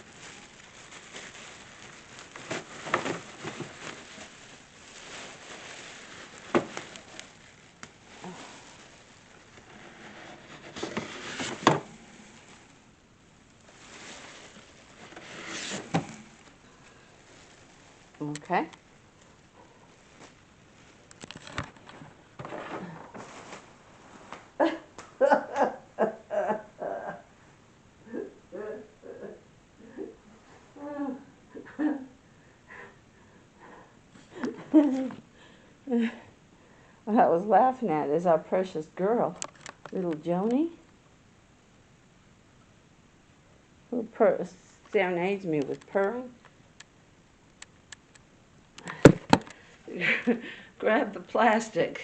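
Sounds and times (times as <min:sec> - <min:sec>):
cardboard rustling and scraping: 0:00.0 - 0:12.8, 0:13.6 - 0:16.6, 0:20.0 - 0:24.4
cardboard rustling and clicking: 0:01.8 - 0:04.3, 0:09.5 - 0:12.0.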